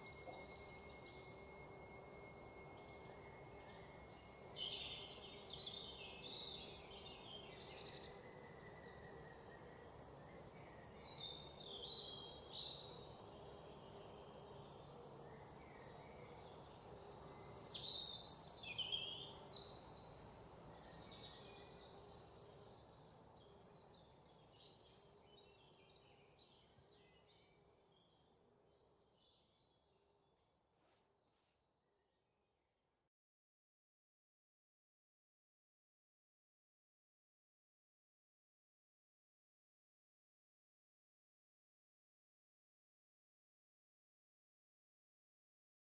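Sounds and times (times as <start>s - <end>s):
birds singing and chirping: 0.0s - 28.2s.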